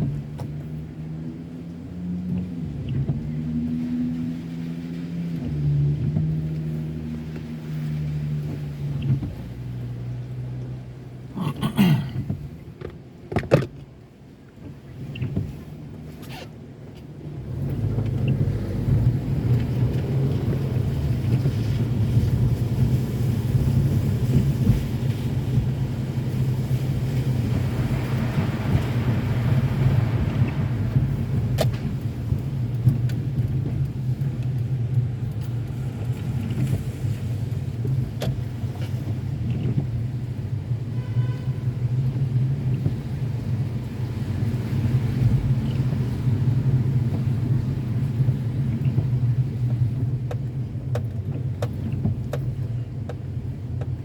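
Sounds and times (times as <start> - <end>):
car driving on wet street: 0.0 - 54.0.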